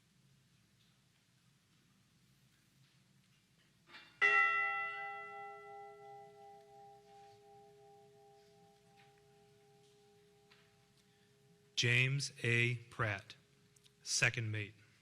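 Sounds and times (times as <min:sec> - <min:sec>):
memorial bell ringing: 0:04.2 - 0:12.2.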